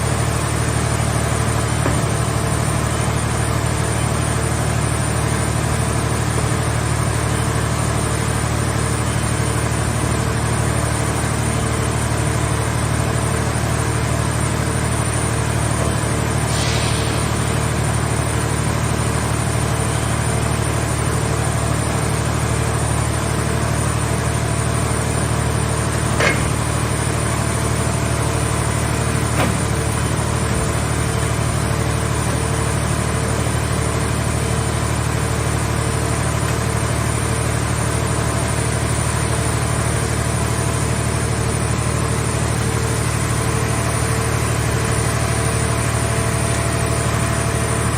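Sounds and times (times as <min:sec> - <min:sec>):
baler engine running: 0:00.0 - 0:47.9
short hiss: 0:16.4 - 0:17.8.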